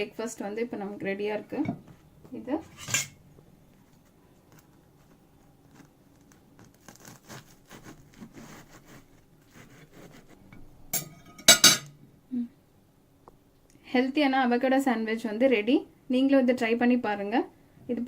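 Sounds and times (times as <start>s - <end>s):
utensils scraping a plate: 2.6s - 3.2s.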